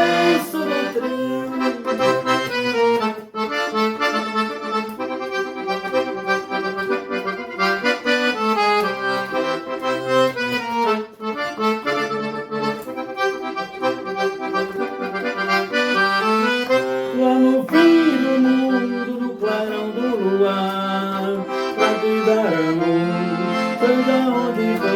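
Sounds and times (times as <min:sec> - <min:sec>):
accordion melody: 0:00.0 - 0:24.9.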